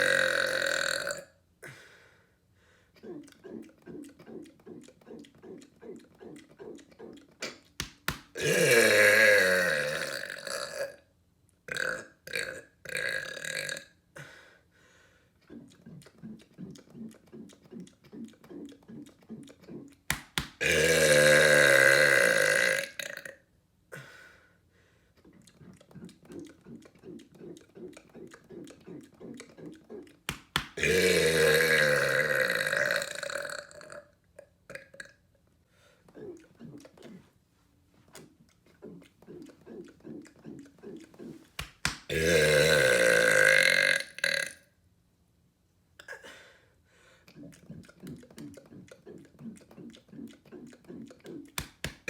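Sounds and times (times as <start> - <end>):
long loud burp: 0.0 - 1.4, 8.4 - 11.0, 11.7 - 13.9, 20.6 - 23.4, 30.8 - 34.1, 42.1 - 44.6.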